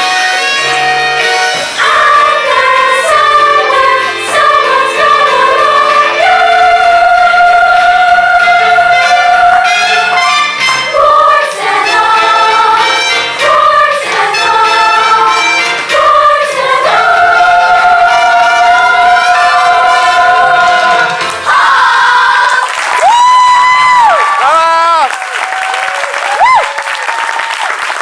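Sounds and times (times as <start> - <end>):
chorus singing over accompaniment: 0.9 - 22.9.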